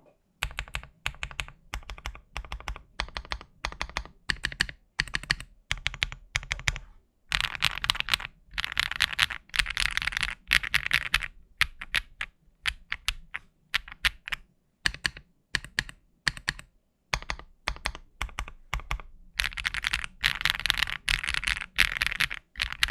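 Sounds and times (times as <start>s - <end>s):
mechanical keyboard typing: 0.4s - 22.9s.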